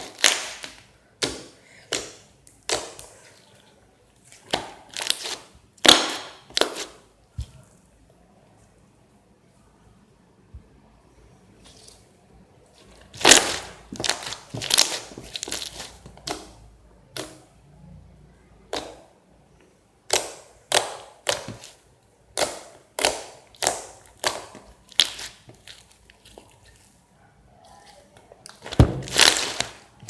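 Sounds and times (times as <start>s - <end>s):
slime popping: 28.5s - 29.8s.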